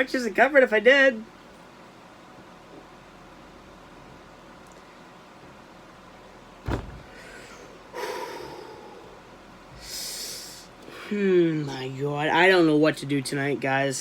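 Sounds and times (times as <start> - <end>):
sharp thump: 6.6 - 7.1.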